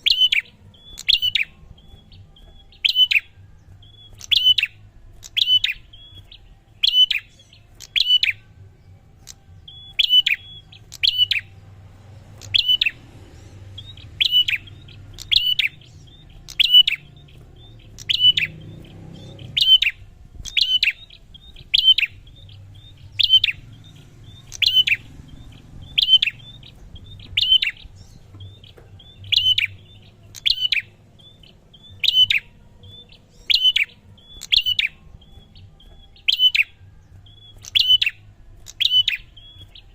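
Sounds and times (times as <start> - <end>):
bird calling sharp high notes: 0.0 - 39.9.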